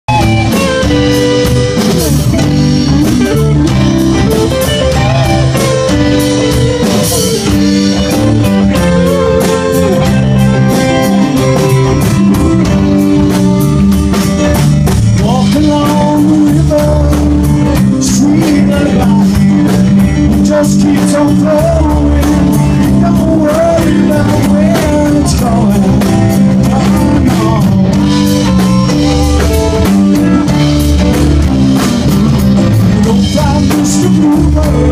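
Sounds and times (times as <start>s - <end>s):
live rock band playing: 0.0s - 34.9s
person singing: 15.1s - 30.6s, 32.6s - 34.9s.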